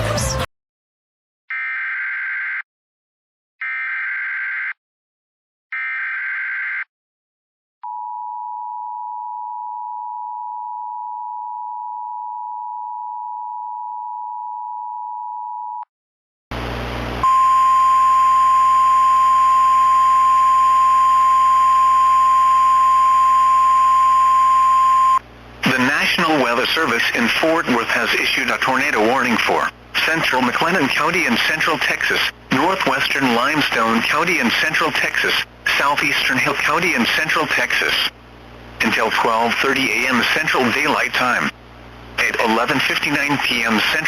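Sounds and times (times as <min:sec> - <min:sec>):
two-tone attention signal: 0:17.2 - 0:25.2.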